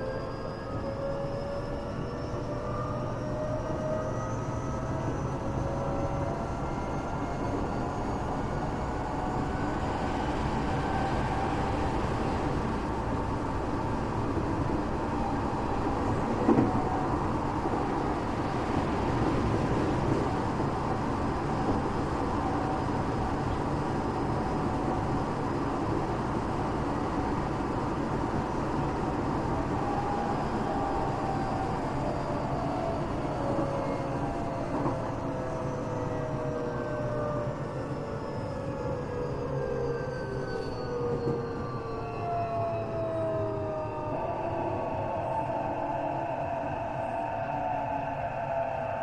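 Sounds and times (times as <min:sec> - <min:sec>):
train wheels rumbling on rail: 0:00.0 - 0:49.0.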